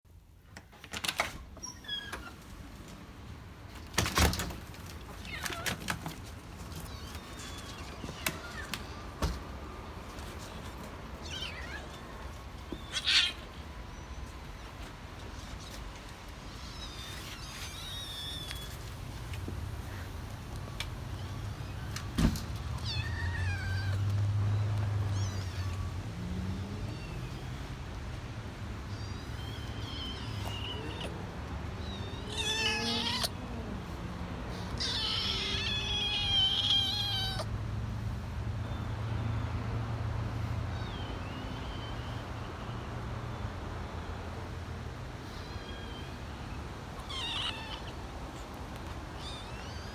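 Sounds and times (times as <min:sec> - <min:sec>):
kittens mewing: 0:04.0 - 0:37.6, 0:45.2 - 0:49.9.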